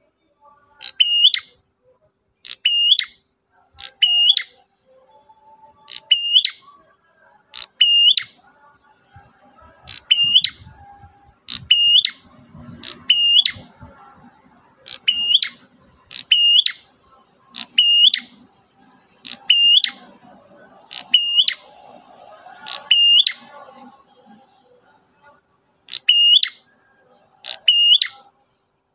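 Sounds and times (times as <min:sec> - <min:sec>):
bird chirping: 0:00.0 - 0:01.6, 0:02.4 - 0:28.3.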